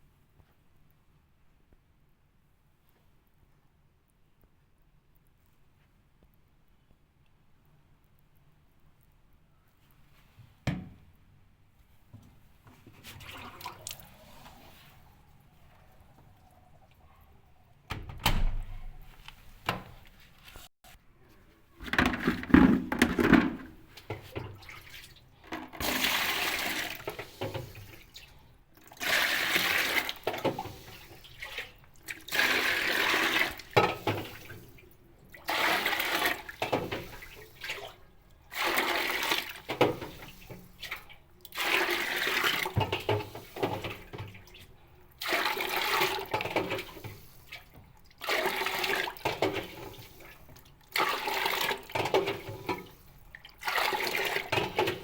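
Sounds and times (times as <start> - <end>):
water sloshing in washing machine: 12.9 - 15.0, 22.0 - 55.0.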